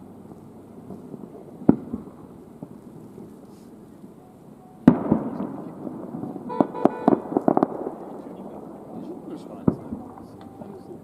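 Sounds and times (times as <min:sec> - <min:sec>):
distant fireworks bursting: 0:00.0 - 0:11.0.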